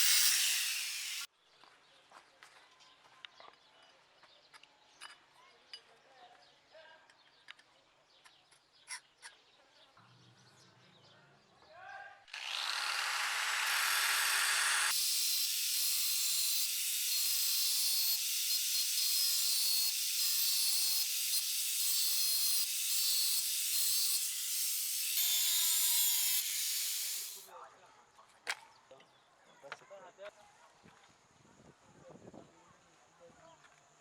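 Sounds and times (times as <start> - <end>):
power tool grinding steel: 0.0 - 1.3, 12.3 - 27.5.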